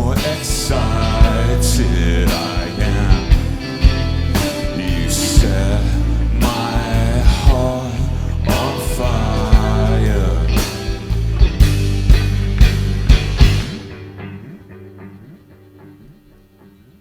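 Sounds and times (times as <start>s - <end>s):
bass guitar: 0.0s - 17.0s
drums: 0.0s - 17.0s
guitars: 0.0s - 17.0s.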